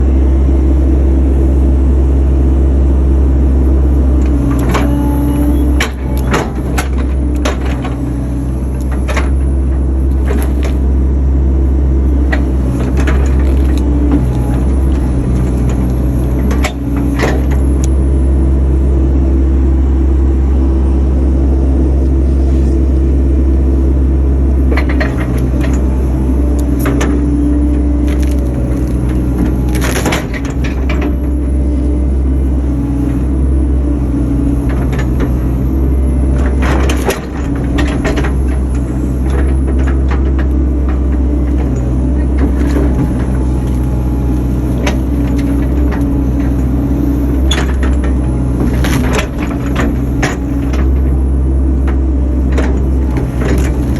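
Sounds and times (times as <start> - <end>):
excavator diesel engine running: 0.0 - 53.9
wood cracking and knocking: 8.8 - 10.9, 12.2 - 17.6, 28.0 - 31.2, 47.4 - 51.0.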